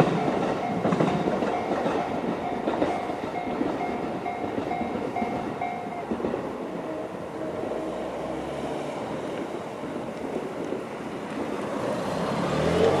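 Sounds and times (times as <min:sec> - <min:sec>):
electric train clickety-clack: 0:00.0 - 0:13.0.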